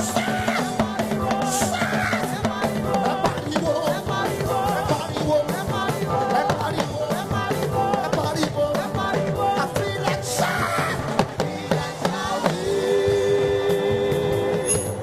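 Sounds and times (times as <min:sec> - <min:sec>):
drum kit dance beat: 0:00.0 - 0:15.0
live gospel band: 0:00.0 - 0:15.0.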